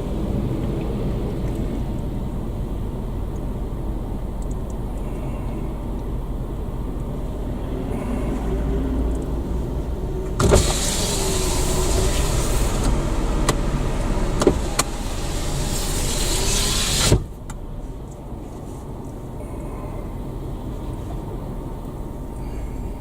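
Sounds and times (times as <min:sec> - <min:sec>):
outside road noise: 0:00.0 - 0:23.0
power window motor whining: 0:10.2 - 0:17.6.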